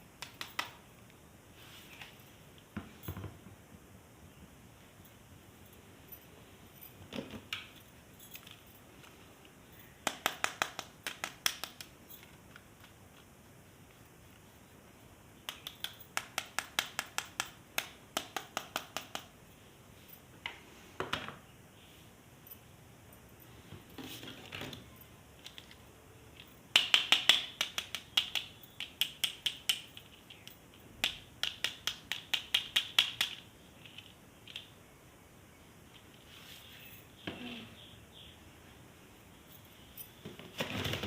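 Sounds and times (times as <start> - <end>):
soft rustles: 1.5 - 3.1, 35.9 - 37.2.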